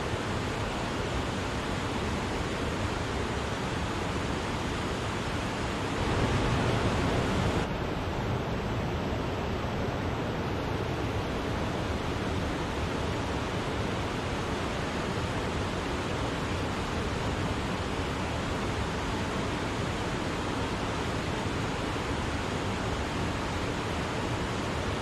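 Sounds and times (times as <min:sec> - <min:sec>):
waterfall rushing: 0:00.0 - 0:08.1.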